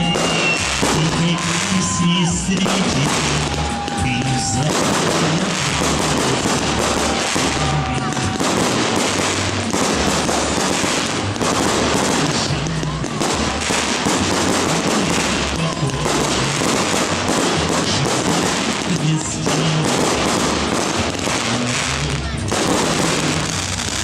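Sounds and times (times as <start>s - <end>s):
fireworks crackling: 0.0s - 24.0s
music playing: 0.0s - 24.0s.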